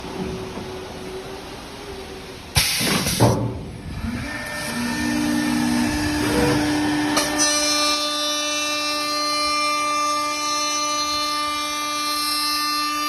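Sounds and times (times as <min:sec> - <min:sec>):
loud bursts of noise: 0:02.4 - 0:13.0
drilling machine motors whining: 0:03.8 - 0:13.0.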